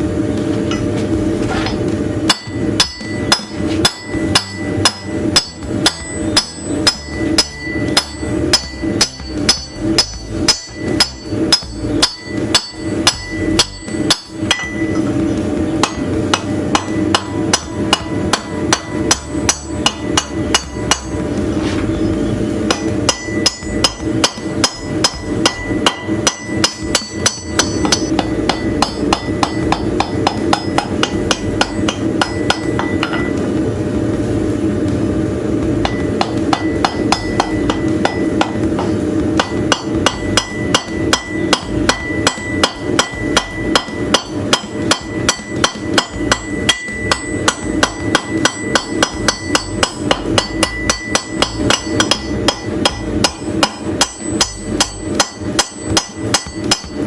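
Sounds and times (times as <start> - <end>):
low hum: 0.0 - 57.0
hammer striking metal on anvil: 0.7 - 33.7, 35.7 - 57.0.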